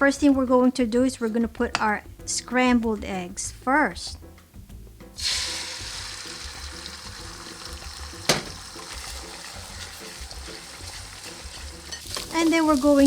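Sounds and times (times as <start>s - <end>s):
eggs sizzling in oil: 5.0s - 13.0s
utensil clacking on pan: 8.2s - 13.0s.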